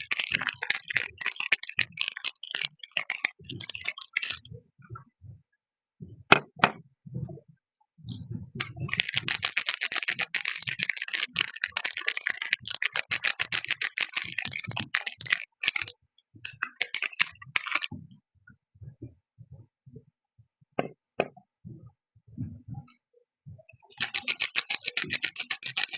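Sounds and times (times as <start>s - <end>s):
packaging crinkling: 8.6s - 15.9s, 23.9s - 25.9s.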